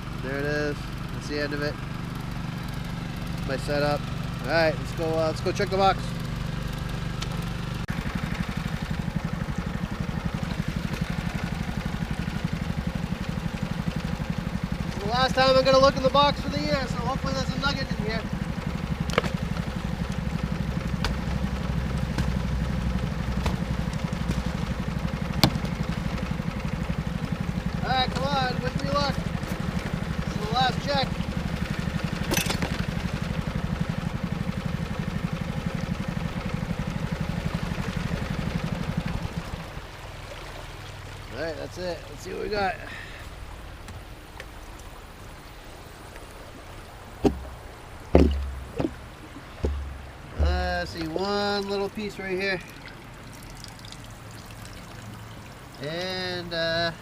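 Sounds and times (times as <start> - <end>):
river water flowing: 0.0 - 57.0
small engine chugging: 0.0 - 57.0
sharp knocks: 25.3 - 26.1, 47.2 - 51.2
short low rumble: 47.2 - 51.2.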